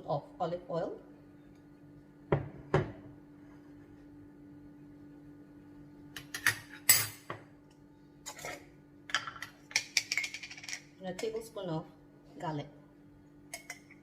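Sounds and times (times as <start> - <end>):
faint steady hum: 0.0 - 14.0
spoon clinking against a bowl: 13.5 - 14.0.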